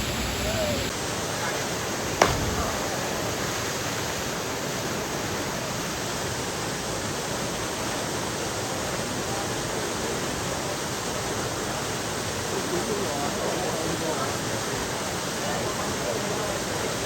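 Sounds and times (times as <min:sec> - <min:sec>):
waterfall rushing: 0:00.0 - 0:00.9.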